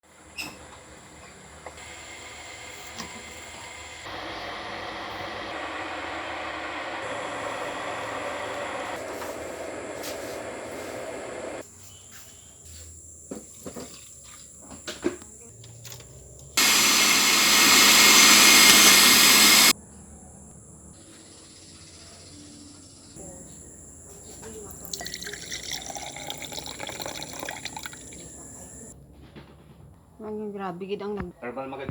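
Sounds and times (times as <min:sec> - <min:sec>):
blender running: 0:01.8 - 0:11.6, 0:16.6 - 0:19.7, 0:25.0 - 0:28.9.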